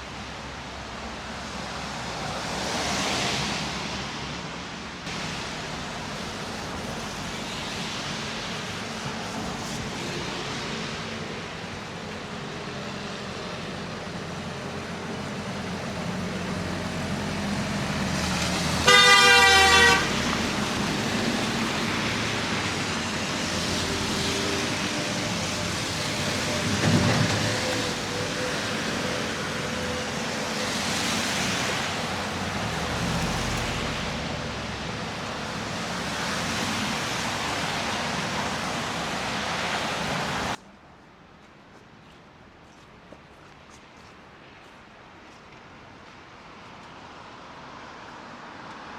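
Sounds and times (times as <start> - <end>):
city street traffic: 0.0 - 48.9
car horn: 18.8 - 20.3.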